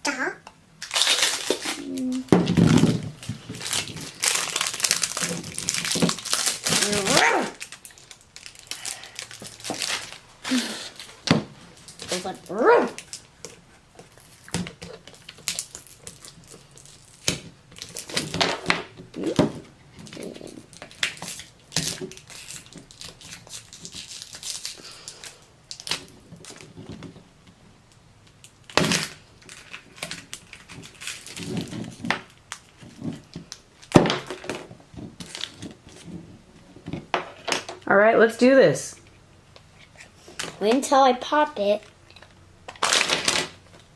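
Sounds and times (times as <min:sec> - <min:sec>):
packaging crinkling: 0:00.8 - 0:19.4, 0:20.0 - 0:26.8, 0:28.5 - 0:34.5, 0:42.1 - 0:43.9.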